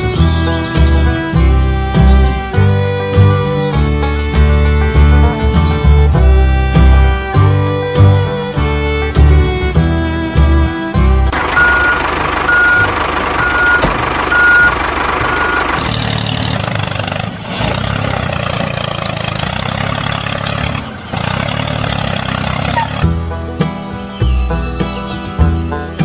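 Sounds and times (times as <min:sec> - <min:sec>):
diesel engine running: 0:00.0 - 0:26.0
backup alarm beeping: 0:11.4 - 0:15.8.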